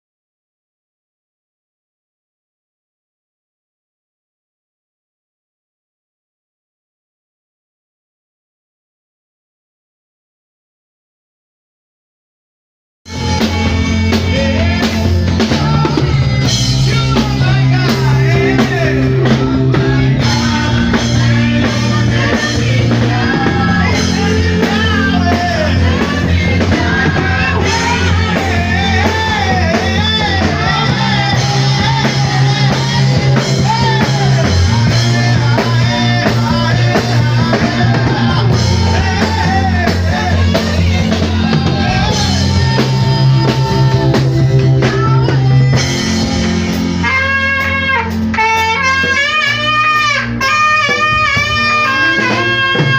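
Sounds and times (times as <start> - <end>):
bass line: 13.1 - 52.9
drum kit: 13.1 - 52.9
saxophone lead melody: 13.1 - 52.9.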